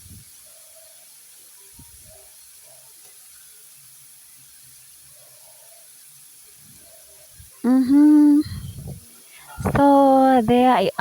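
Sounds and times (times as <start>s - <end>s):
vegetables sizzling in oil: 0.0s - 8.4s.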